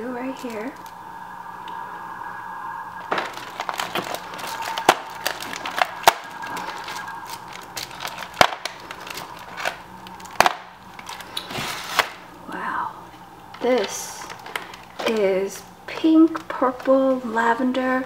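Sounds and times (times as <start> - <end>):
packaging crackling: 3.2 - 12.2, 13.6 - 15.4.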